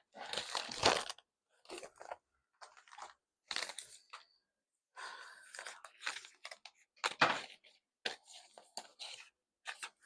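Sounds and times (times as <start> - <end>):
packaging crinkling and tearing: 0.2 - 4.0.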